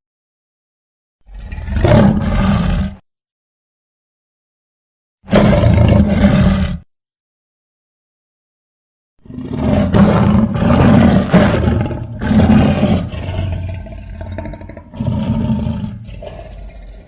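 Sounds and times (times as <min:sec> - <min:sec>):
creature roaring and growling: 0:01.3 - 0:03.0, 0:05.3 - 0:06.8, 0:09.2 - 0:17.0.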